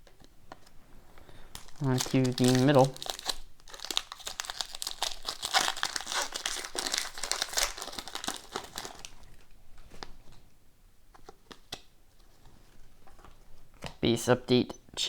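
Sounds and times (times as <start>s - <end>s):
plastic wrapper tearing and crinkling: 1.3s - 10.1s.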